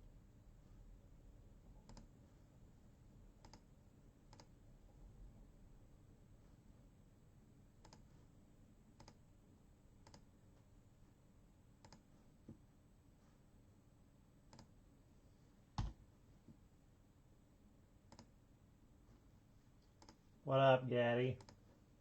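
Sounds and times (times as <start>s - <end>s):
computer mouse clicking: 1.9s - 2.1s, 3.4s - 3.7s, 4.3s - 4.5s, 7.8s - 8.2s, 9.0s - 9.2s, 10.0s - 10.3s, 11.8s - 12.1s, 14.5s - 14.7s, 18.1s - 18.3s, 19.8s - 20.2s, 21.4s - 21.6s.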